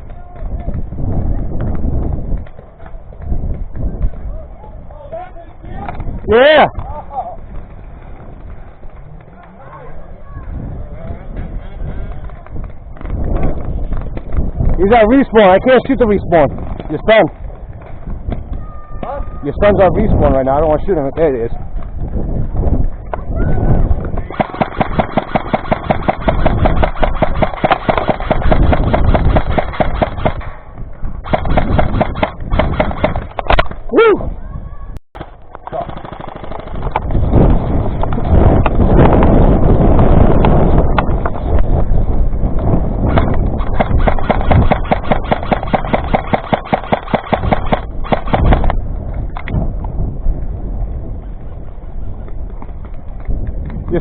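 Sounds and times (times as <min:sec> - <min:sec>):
airsoft rifle firing full auto: 0:24.3 - 0:30.4, 0:35.7 - 0:36.8, 0:43.6 - 0:48.7.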